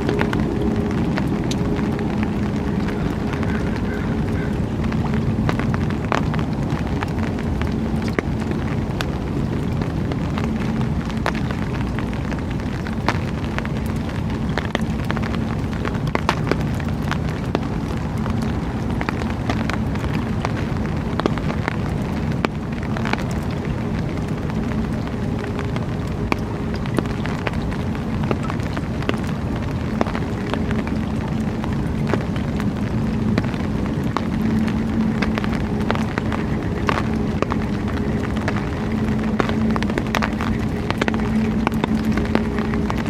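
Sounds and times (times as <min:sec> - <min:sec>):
faint constant hum: 0:00.0 - 0:43.0
low rumbling noise: 0:00.0 - 0:43.0
short crackles and clicks: 0:00.0 - 0:43.0.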